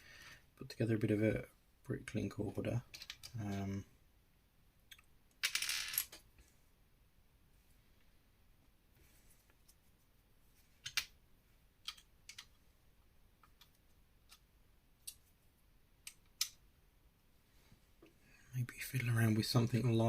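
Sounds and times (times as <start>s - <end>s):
plastic bricks clicking: 10.8s - 11.2s, 11.8s - 12.6s.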